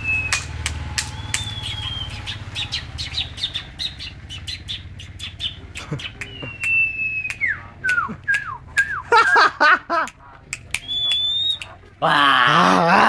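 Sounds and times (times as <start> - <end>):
songbird singing whistled notes: 0.0 - 9.0, 10.6 - 11.7
sharp chip-like clicks: 0.2 - 1.9, 10.0 - 11.8.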